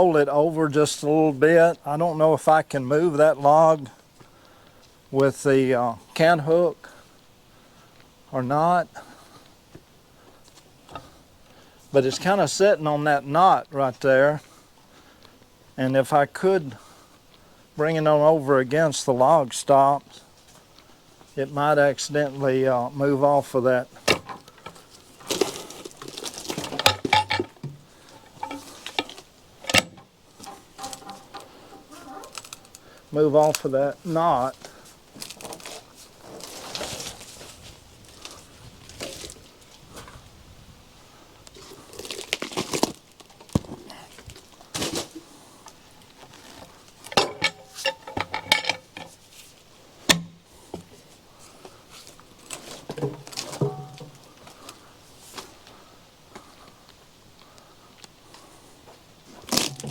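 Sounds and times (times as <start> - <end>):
hook scraping bark: 24.3 - 32.9
log knocking on steel bed: 26.8 - 32.3, 52.9 - 54.2
ringing metallic clanks: 26.8 - 32.3, 47.2 - 49.1, 53.6 - 54.2.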